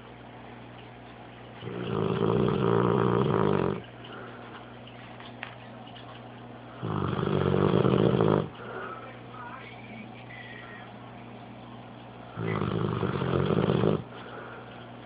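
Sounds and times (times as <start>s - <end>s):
dog snoring: 1.6s - 4.2s, 6.7s - 8.8s, 12.3s - 14.2s.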